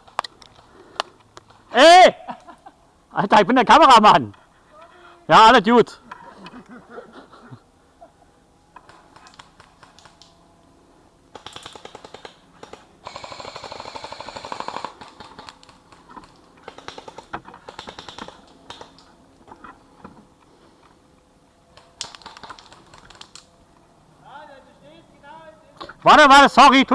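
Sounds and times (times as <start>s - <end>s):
airsoft guns firing: 11.3s - 19.0s, 21.8s - 23.4s.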